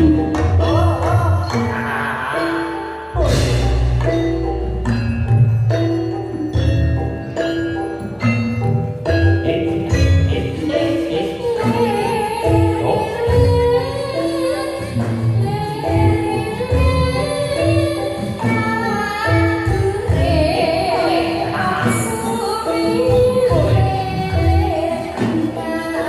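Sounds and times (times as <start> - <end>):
drum beats: 0.0 - 26.0
metallophone notes: 0.0 - 26.0
woman singing: 10.3 - 26.0.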